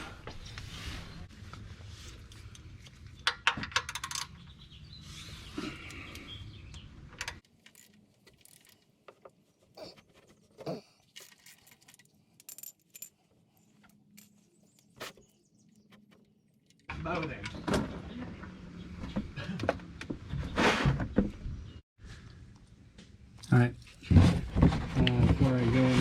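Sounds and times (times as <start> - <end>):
metal objects clinking and rattling: 11.0 - 14.9.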